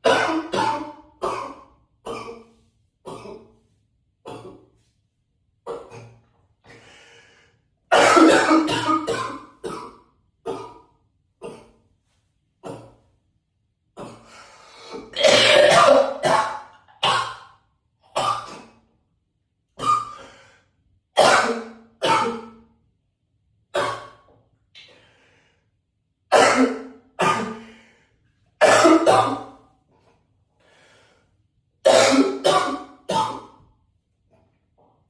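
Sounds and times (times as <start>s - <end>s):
man coughing: 0.0s - 2.4s, 7.9s - 9.9s, 15.1s - 17.3s, 26.3s - 27.7s, 28.6s - 29.5s, 31.9s - 33.5s.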